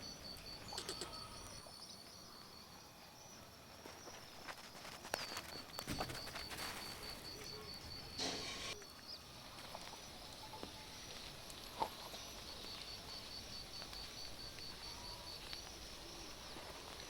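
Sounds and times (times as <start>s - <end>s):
insect chirping: 0.0s - 17.0s.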